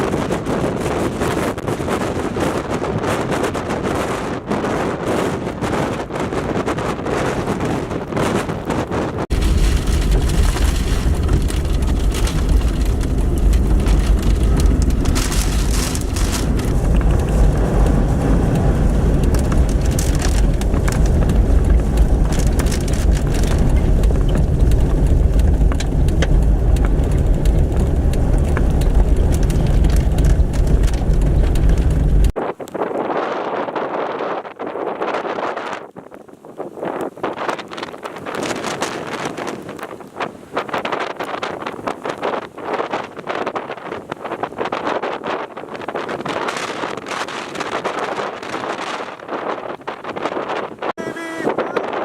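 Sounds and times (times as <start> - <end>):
storm wind roaring: 0.0 - 52.0
deep low rumble: 9.3 - 32.4.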